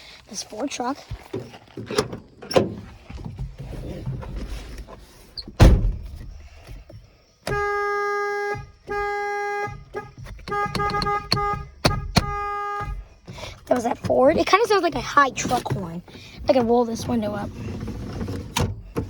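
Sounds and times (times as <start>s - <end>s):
heavy thud: 5.6s - 6.4s
truck horn honking: 7.5s - 13.1s.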